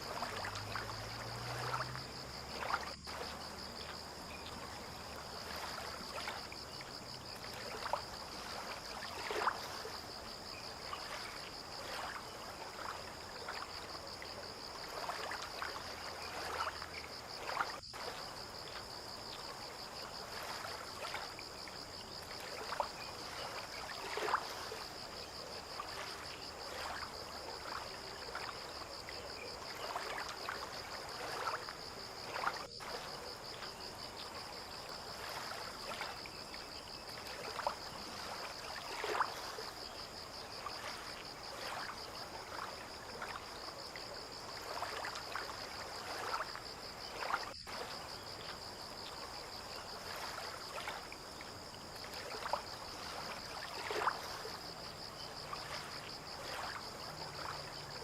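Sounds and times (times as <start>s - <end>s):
water lapping: 0.0s - 58.0s.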